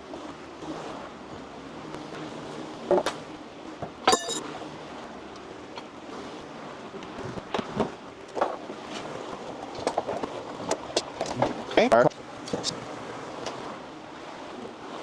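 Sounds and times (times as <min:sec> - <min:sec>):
ringing metal clink: 0:04.1 - 0:04.5.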